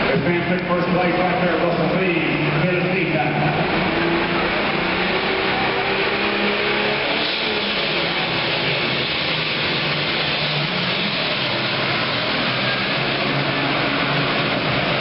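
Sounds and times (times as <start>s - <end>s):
tractor diesel engine roaring: 0.0s - 15.0s.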